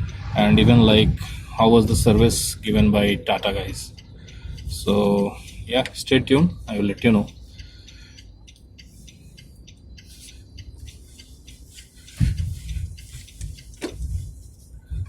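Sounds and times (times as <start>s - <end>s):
road and engine rumble: 0.0s - 15.0s
light ticks and squeaks: 2.9s - 15.0s.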